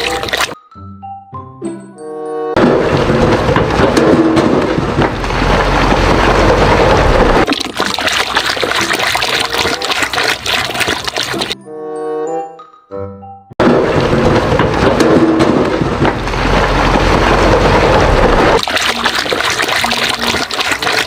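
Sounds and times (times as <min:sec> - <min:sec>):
water dripping: 0:00.0 - 0:00.6, 0:07.4 - 0:11.6, 0:18.6 - 0:21.0
water gushing and splashing: 0:00.0 - 0:00.6, 0:02.6 - 0:11.6, 0:13.6 - 0:21.0.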